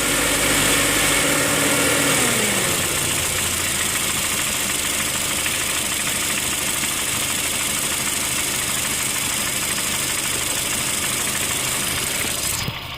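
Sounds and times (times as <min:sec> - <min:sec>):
car engine running: 0:00.0 - 0:12.9
engine knock: 0:02.8 - 0:12.9.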